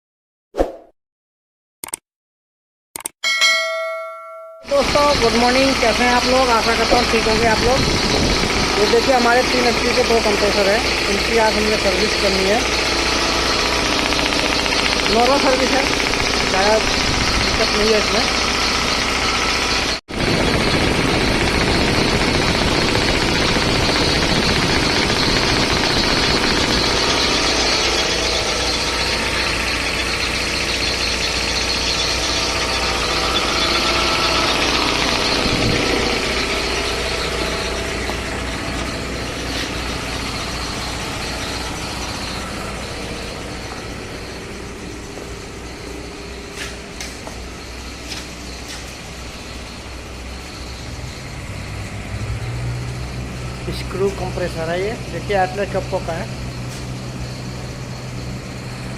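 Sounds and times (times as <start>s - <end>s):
sharp clicks: 1.8s - 2.0s, 3.0s - 3.2s
air compressor droning: 4.6s - 58.9s.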